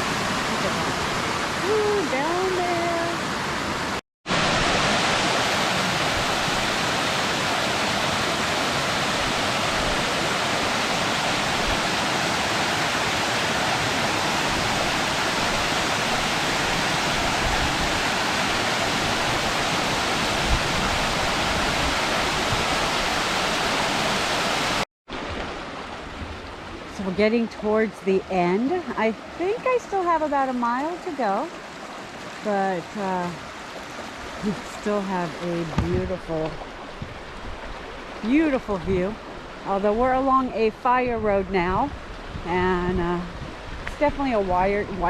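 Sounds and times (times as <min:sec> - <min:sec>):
waterfall rushing: 0:00.0 - 0:24.8.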